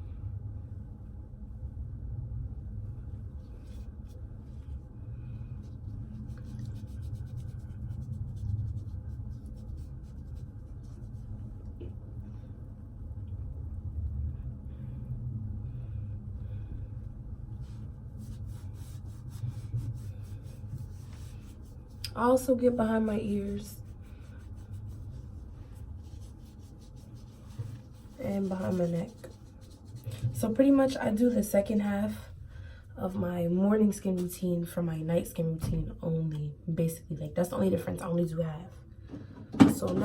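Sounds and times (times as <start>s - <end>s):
low rumble: 0.0s - 33.8s
paper towel scrubbing skin: 3.4s - 11.7s, 17.5s - 31.8s.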